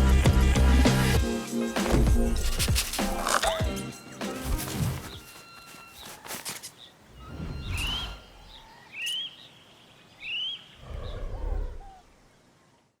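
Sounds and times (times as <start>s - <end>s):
bird chirping: 2.4s - 12.3s.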